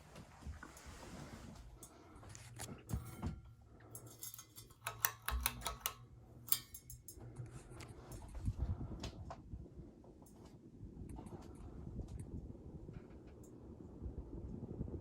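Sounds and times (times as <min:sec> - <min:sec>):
ceiling fan humming: 0:00.0 - 0:15.0
clicks and light rattles: 0:01.5 - 0:09.4.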